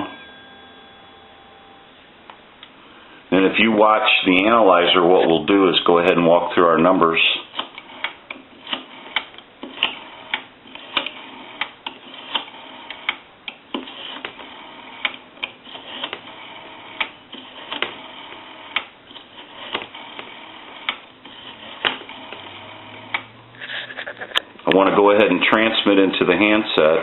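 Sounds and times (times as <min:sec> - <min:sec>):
faint line hum: 0:00.0 - 0:06.7
rotary dial clicks: 0:07.5 - 0:23.3.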